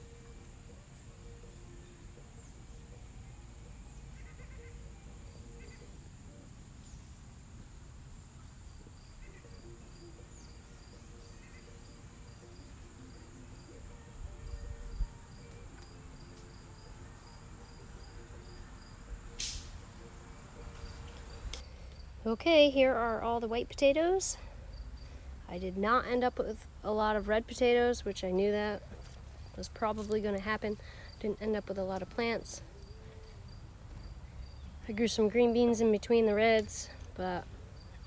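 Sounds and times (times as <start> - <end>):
insect chirping: 0.0 - 38.0
insects droning: 0.0 - 38.0
sharp click: 19.4 - 19.8.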